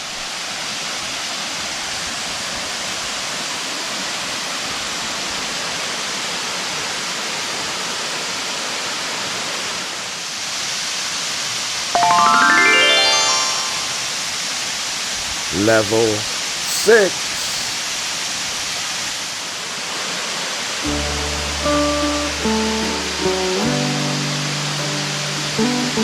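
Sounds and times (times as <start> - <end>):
waterfall rushing: 12.0 - 18.5.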